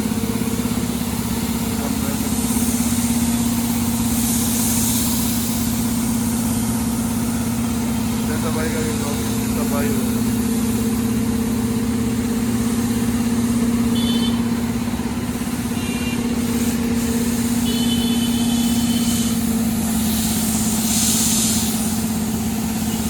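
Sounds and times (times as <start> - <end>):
engine humming: 0.0 - 23.0
brief hiss: 17.4 - 23.0.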